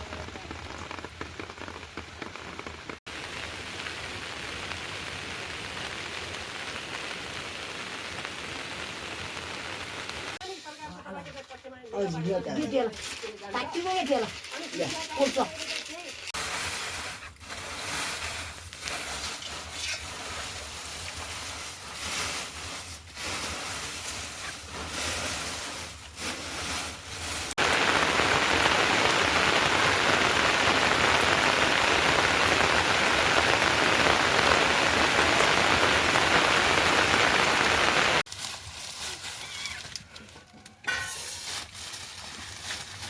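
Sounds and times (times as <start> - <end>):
heavy rain: 0.0 - 10.4, 27.2 - 38.3
rain falling: 0.0 - 10.8, 12.0 - 16.6, 25.2 - 38.3.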